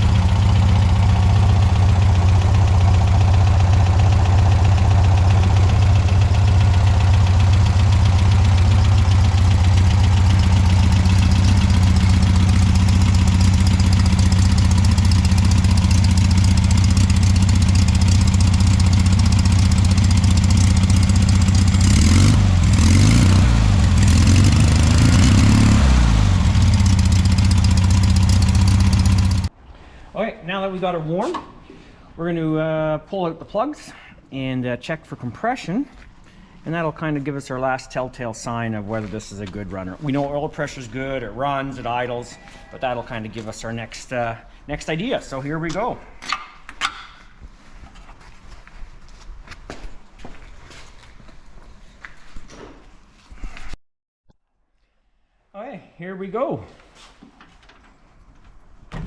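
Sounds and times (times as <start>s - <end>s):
car engine idling: 0.0s - 29.5s
engine revving: 0.0s - 29.5s.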